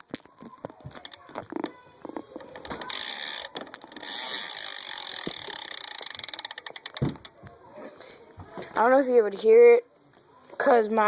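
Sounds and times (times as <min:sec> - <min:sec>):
bike hub ratchet ticking: 0:02.5 - 0:07.4.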